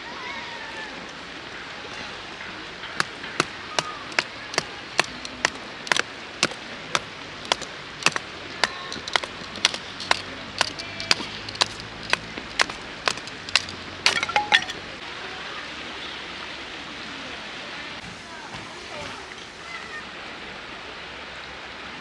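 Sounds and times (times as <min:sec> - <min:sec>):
sharp knocks: 0:03.0 - 0:14.8.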